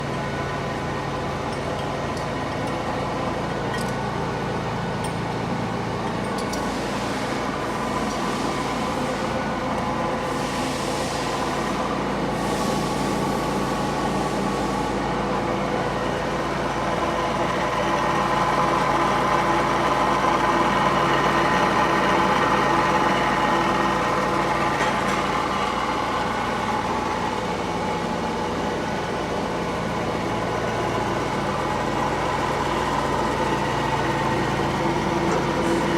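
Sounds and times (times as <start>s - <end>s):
milling machine humming: 12.8s - 35.9s.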